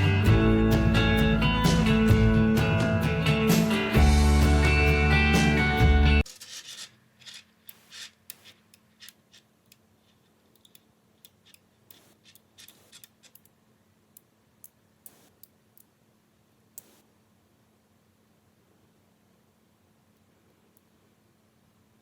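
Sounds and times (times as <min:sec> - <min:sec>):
magnetic balls clicking together: 0:06.2 - 0:09.8, 0:10.4 - 0:15.9, 0:16.8 - 0:17.0.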